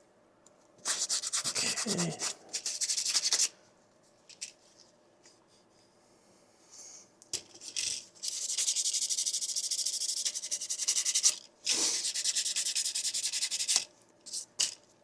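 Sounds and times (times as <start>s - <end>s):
sandpaper rubbing on plastic: 0.8s - 3.5s, 8.3s - 13.8s.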